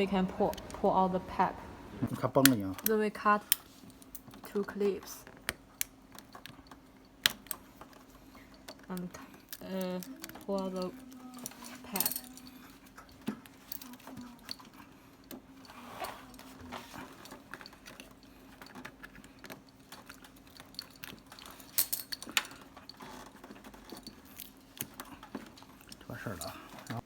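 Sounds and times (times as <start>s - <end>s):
low hum: 0.0s - 2.4s
plastic parts clicking and rattling: 2.3s - 27.0s.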